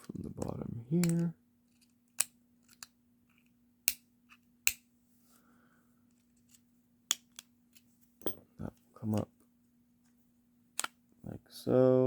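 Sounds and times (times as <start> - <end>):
plastic clicks and snaps: 0.0 - 1.3.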